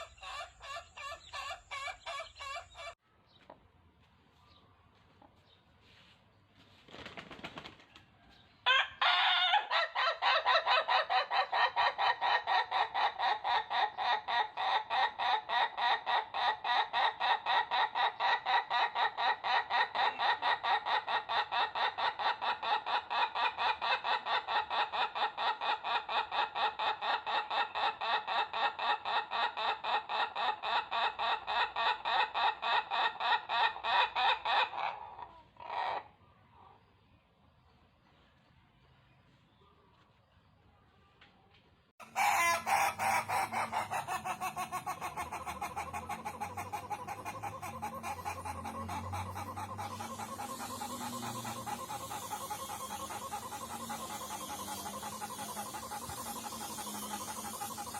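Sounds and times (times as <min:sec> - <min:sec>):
rooster laugh-like crowing: 0:08.6 - 0:36.1, 0:42.0 - 0:57.9.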